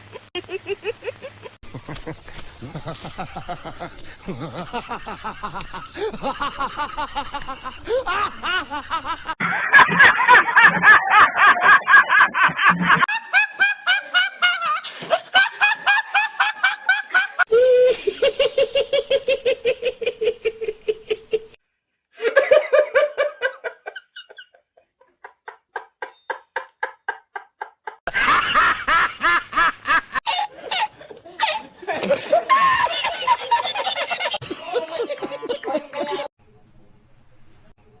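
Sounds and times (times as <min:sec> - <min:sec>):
laughing sound effects: 0:00.0 - 0:20.8.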